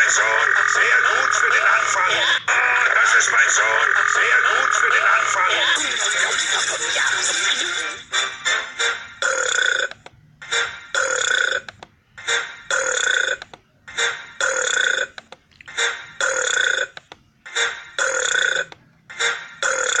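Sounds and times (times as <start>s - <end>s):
person belching: 9.2s - 10.0s, 11.0s - 11.7s, 12.7s - 13.4s, 14.4s - 17.0s, 18.0s - 18.7s, 19.6s - 20.0s.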